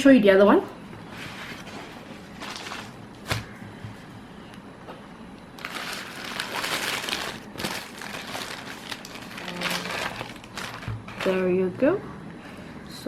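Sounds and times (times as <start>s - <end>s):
paper wrapper crinkling: 1.3s - 3.4s, 5.6s - 11.4s.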